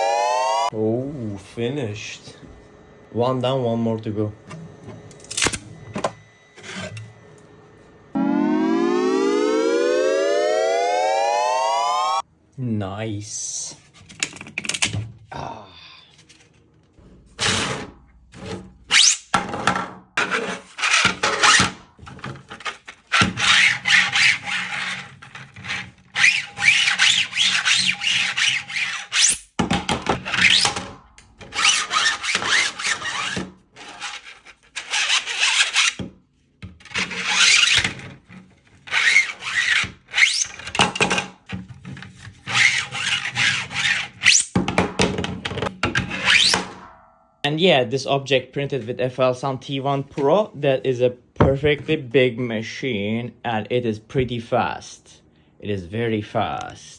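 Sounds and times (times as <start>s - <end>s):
plastic parts rasping and scraping: 4.5s - 7.2s, 16.1s - 19.3s, 20.2s - 29.4s, 30.0s - 44.5s.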